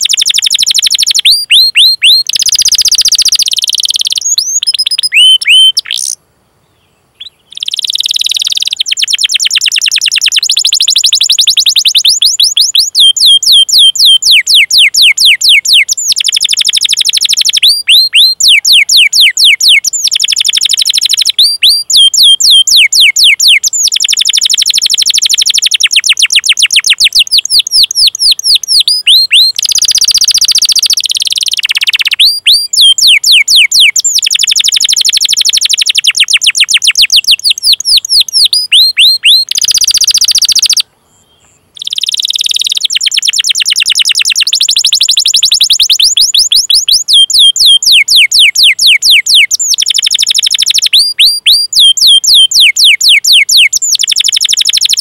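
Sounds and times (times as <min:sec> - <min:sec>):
canary buzzy rolled trills: 0:00.0 - 0:06.2, 0:07.2 - 0:40.9
canary chirping: 0:00.0 - 0:06.2, 0:07.2 - 0:40.8, 0:41.8 - 0:55.0.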